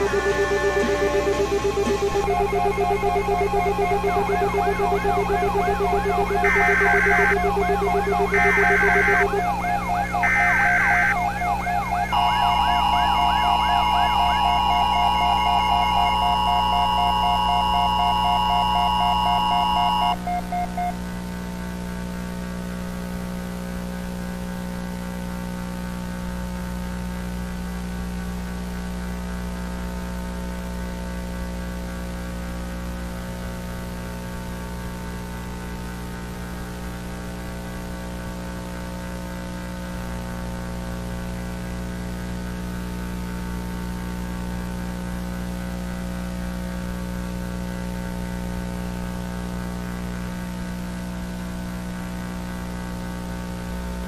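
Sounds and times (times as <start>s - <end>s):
electrical mains hum: 0.0s - 21.7s.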